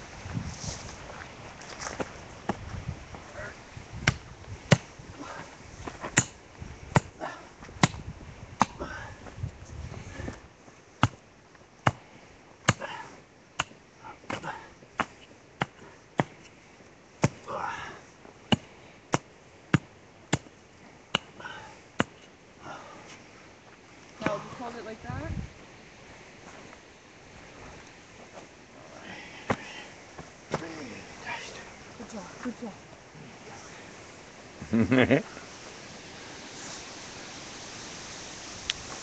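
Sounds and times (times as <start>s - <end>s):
digging tool striking rocky ground: 4.0s - 4.9s, 6.1s - 7.1s, 7.8s - 8.0s, 11.0s - 11.2s, 13.6s - 16.6s, 17.2s - 17.5s, 18.5s - 21.4s, 22.0s - 22.3s.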